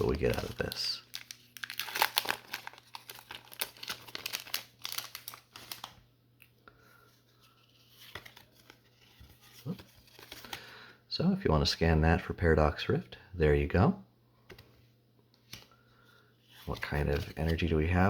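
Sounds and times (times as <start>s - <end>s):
foil wrapper crinkling: 0.0s - 6.0s.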